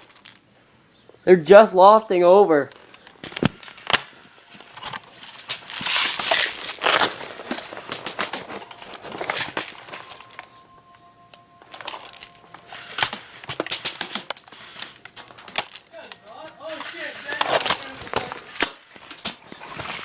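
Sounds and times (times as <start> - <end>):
rustling and crinkling: 0.0 - 0.5, 2.6 - 20.0
faint two-note tone: 8.2 - 13.5, 15.9 - 17.2.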